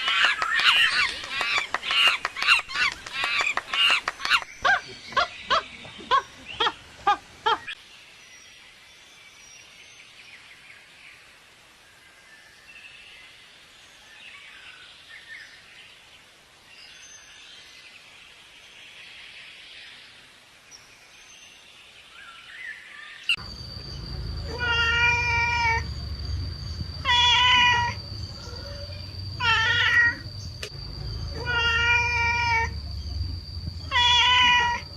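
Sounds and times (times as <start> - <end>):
faint outdoor ambience: 0.0 - 34.9
steady low hum: 23.3 - 34.9
cat meowing: 24.4 - 25.9, 27.0 - 28.0, 29.4 - 30.2, 31.3 - 32.8, 33.8 - 34.9.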